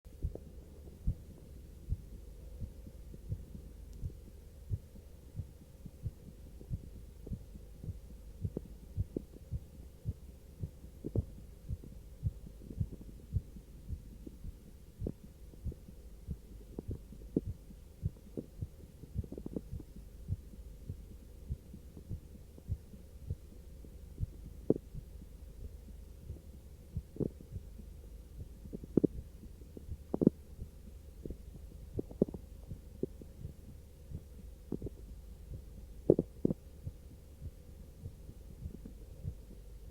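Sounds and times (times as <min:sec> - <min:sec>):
low recording hum: 0:00.0 - 0:39.9
heartbeat thuds: 0:00.1 - 0:39.9.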